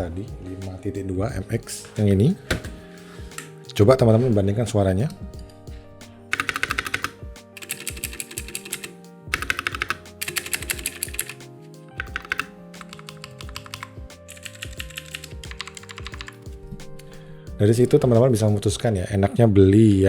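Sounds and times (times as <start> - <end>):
mechanical keyboard typing: 6.3 - 11.4, 12.0 - 17.1.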